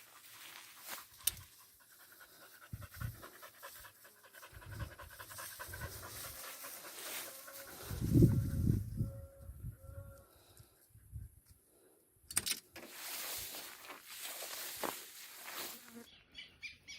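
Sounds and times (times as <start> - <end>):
animal panting: 0.0 - 8.6.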